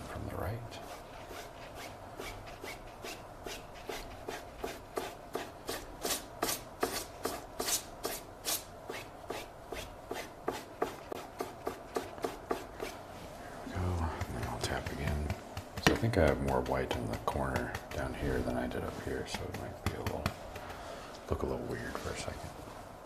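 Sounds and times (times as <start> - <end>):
paintbrush tapping on canvas: 14.0 - 18.2, 19.2 - 20.9.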